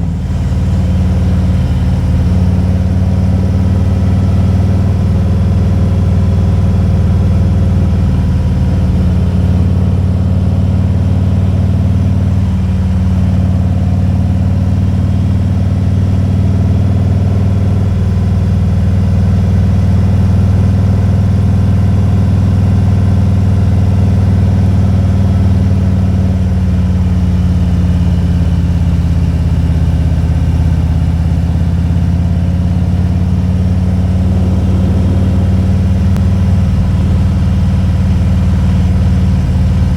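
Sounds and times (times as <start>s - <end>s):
motorcycle engine drone: 0.0s - 39.9s.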